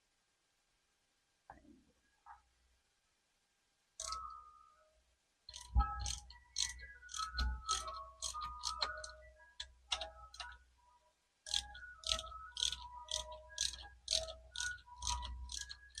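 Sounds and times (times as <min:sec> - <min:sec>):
hand ratchet clicking: 0:05.5 - 0:10.6, 0:11.5 - 0:16.0.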